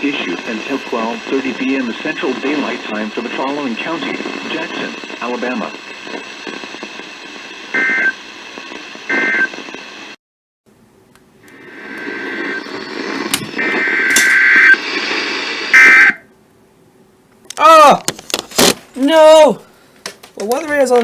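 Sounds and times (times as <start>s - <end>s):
static: 0.0s - 10.2s, 11.4s - 16.3s.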